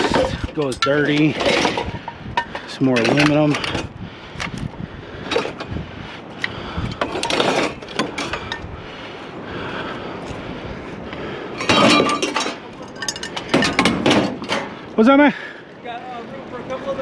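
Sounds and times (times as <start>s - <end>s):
metal clinks and knocks: 0.0s - 3.9s, 7.0s - 8.7s, 11.6s - 14.8s
metal scrap clattering: 0.0s - 3.9s, 7.0s - 8.6s, 11.6s - 14.8s.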